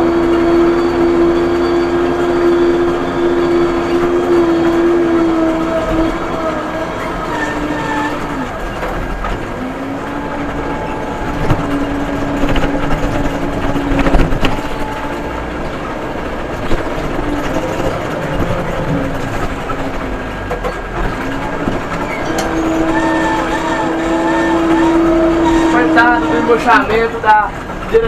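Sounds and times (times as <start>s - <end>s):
backhoe engine and hydraulics whine: 0.0s - 28.0s
sharp metallic knocks: 21.6s - 26.9s.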